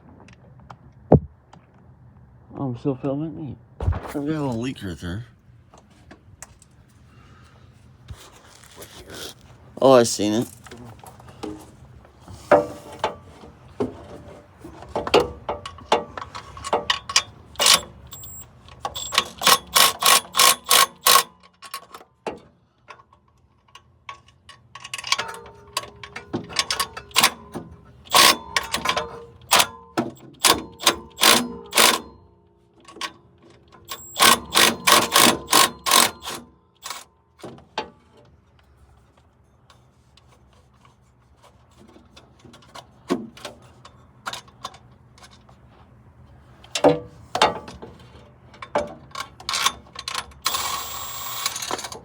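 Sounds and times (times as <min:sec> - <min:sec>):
hand ratchet clicking: 0:19.0 - 0:21.4, 0:28.1 - 0:28.8, 0:30.4 - 0:32.1, 0:33.9 - 0:37.0.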